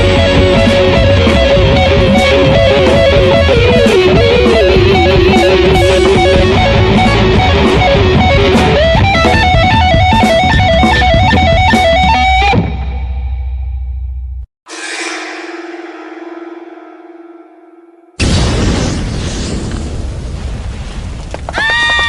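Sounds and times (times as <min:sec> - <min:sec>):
rock music with electric guitar: 0:00.0 - 0:13.6
held guitar chord ringing: 0:00.0 - 0:18.2.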